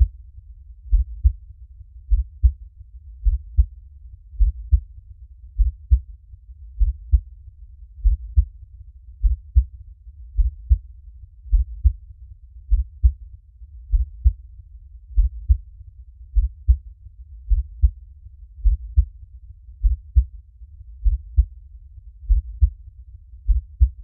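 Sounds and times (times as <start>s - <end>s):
heartbeat double thump: 2.1s - 2.5s, 3.2s - 3.7s, 17.5s - 18.0s, 18.6s - 19.1s, 19.8s - 20.2s, 23.5s - 24.0s.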